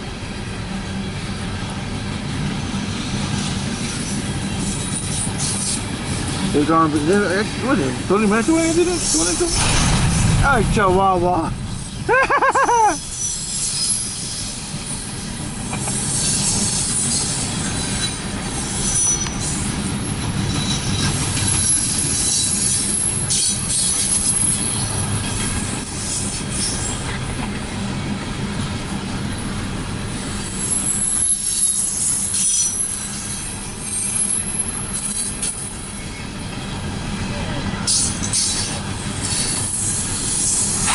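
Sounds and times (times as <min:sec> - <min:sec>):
train wheels rumbling on rails: 0:00.0 - 0:40.9
high-pitched wheel squeal: 0:03.2 - 0:09.6, 0:11.6 - 0:27.2, 0:30.1 - 0:36.3.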